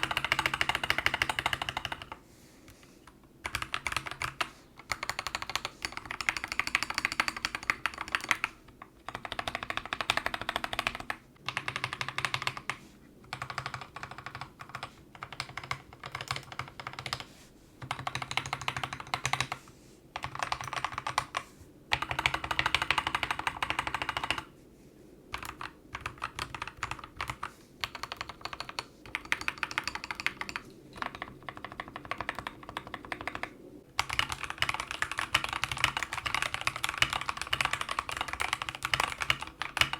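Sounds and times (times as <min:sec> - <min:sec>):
mechanical keyboard typing: 0:00.0 - 0:02.2, 0:03.4 - 0:19.6, 0:20.2 - 0:24.5, 0:25.3 - 0:39.9.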